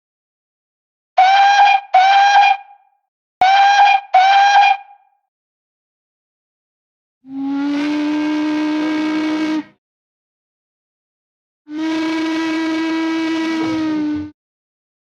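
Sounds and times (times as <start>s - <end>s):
steam locomotive whistle: 1.2s - 2.8s, 3.4s - 5.0s, 7.3s - 9.8s, 11.7s - 14.4s.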